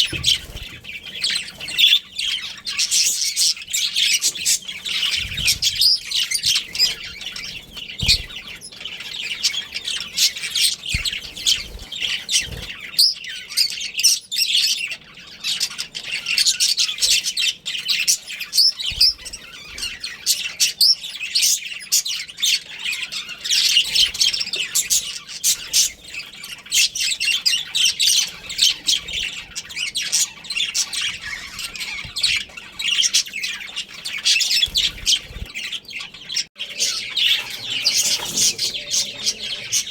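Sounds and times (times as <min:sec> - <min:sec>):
parrots chirping and squawking: 0:00.0 - 0:39.9.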